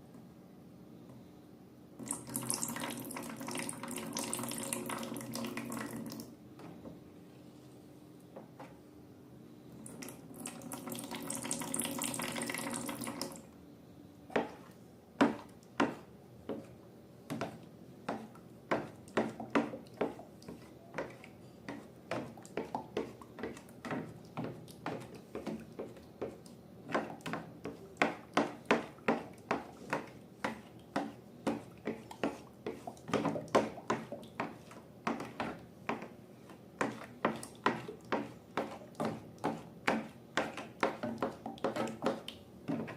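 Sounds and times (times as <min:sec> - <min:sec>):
liquid pouring: 0:10.4 - 0:13.4.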